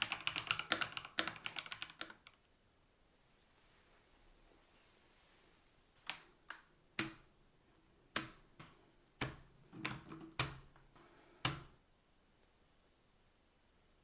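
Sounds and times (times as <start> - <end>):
mechanical keyboard clicks and knocks: 0.0 - 2.4, 9.2 - 10.8.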